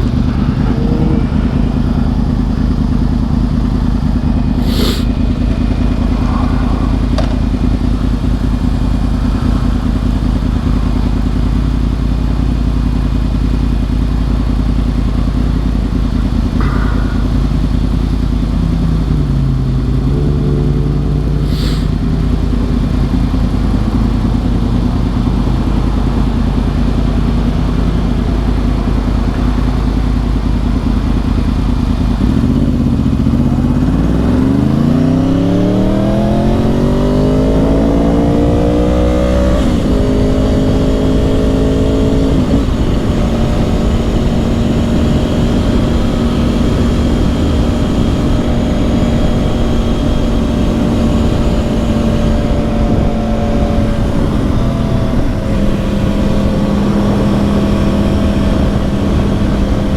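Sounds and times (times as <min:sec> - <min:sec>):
wind rush: 0:00.0 - 0:11.4
motorcycle engine accelerating: 0:00.0 - 0:59.9.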